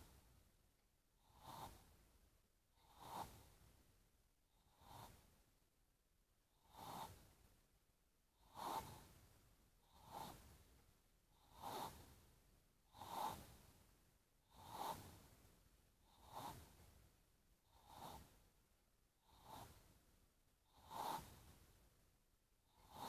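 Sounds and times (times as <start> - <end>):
faint snoring: 1.2 - 2.0, 2.8 - 3.6, 4.6 - 5.3, 6.5 - 7.3, 8.4 - 9.2, 9.8 - 10.6, 11.3 - 12.2, 12.9 - 13.7, 14.4 - 15.3, 16.0 - 16.9, 17.6 - 18.4, 19.2 - 19.9, 20.6 - 21.6, 22.7 - 23.0.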